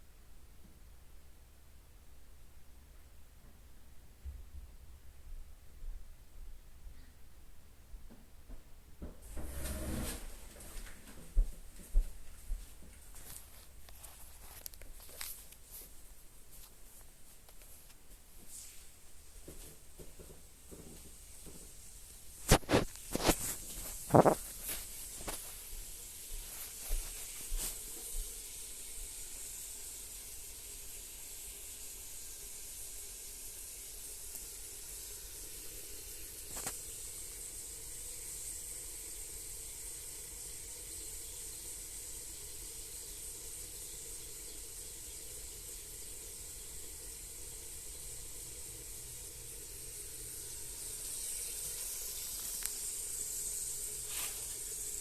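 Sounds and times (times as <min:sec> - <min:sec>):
food sizzling in a frying pan: 0:21.6 - 0:55.0.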